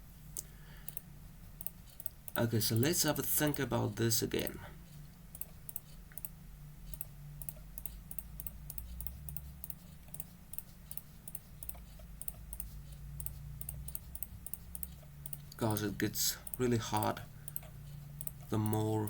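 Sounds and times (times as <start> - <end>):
faint low hum: 0.0 - 19.0
computer mouse clicking: 0.4 - 3.7, 5.3 - 19.0.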